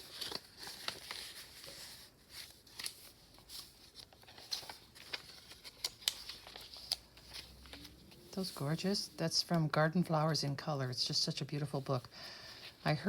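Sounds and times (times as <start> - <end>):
paper pages rustling: 0.0 - 10.2.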